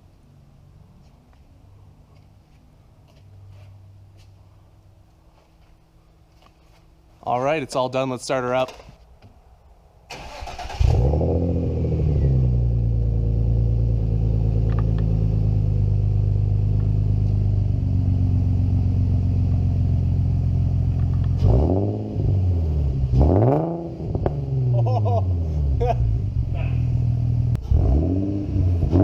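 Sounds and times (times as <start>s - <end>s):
car engine starting and idling: 10.1s - 29.0s
engine revving: 10.2s - 29.0s.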